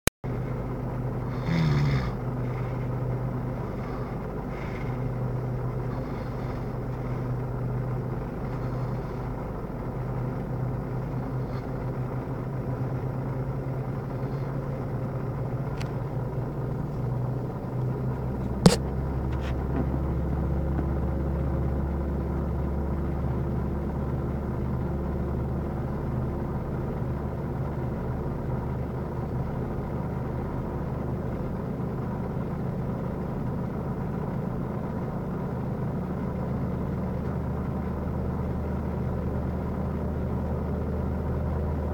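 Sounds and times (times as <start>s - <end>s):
person snoring: 1.3s - 2.7s
sharp click: 18.7s - 18.9s.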